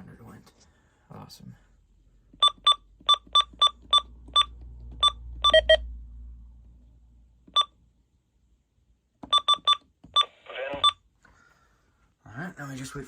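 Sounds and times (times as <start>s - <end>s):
electronic key beeps: 2.4s - 5.8s, 9.3s - 11.0s.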